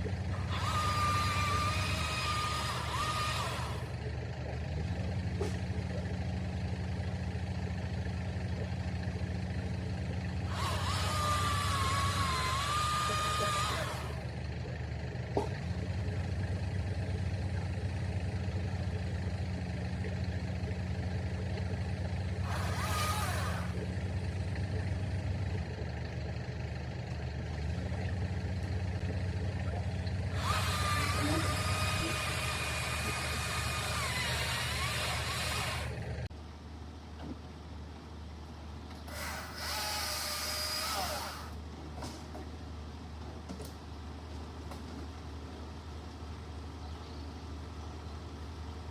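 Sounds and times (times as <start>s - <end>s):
whining power tool: 0.0s - 4.1s, 10.4s - 14.3s, 22.3s - 23.9s, 29.6s - 36.3s, 39.1s - 41.6s
heavy engine running: 0.0s - 48.9s.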